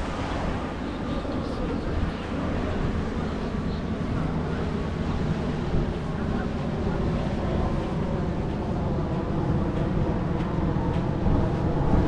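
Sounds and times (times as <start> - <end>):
waves washing onto beach: 0.0 - 12.0
wind buffeting microphone: 0.0 - 12.0.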